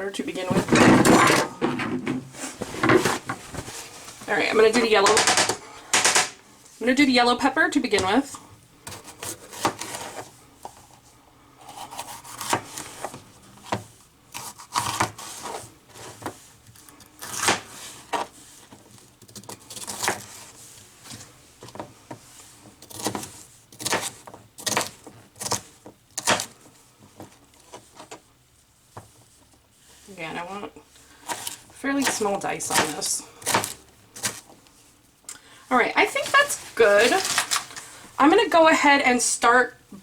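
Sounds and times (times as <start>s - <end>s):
knife slicing pepper: 11.7s - 13.1s, 14.3s - 15.6s.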